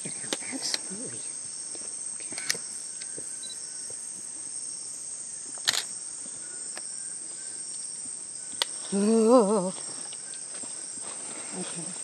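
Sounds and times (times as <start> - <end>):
insects droning: 0.0 - 12.0.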